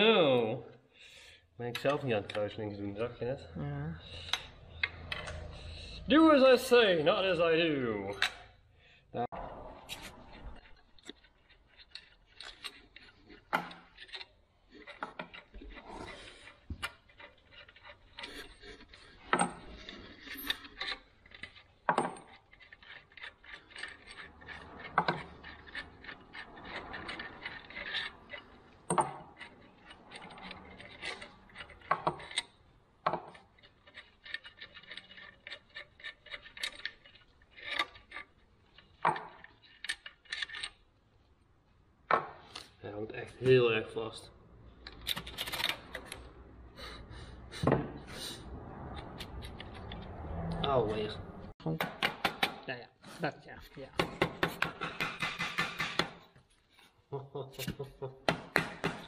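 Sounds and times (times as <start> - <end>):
scraping and rubbing metal: 9.3 - 41.4, 42.4 - 51.6.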